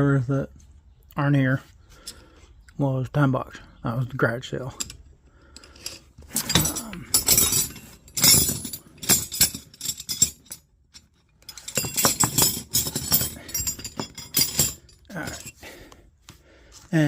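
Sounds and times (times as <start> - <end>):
metal hand tools clinking: 5.6 - 15.9.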